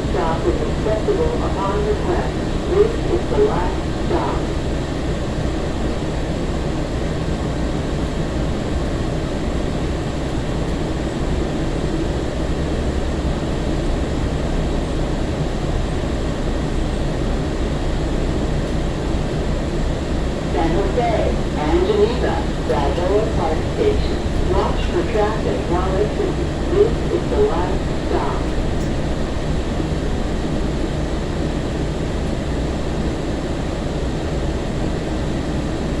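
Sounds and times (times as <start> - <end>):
low hum: 0.0 - 6.5, 12.2 - 33.4
light rail car rumble and hiss: 0.0 - 36.0.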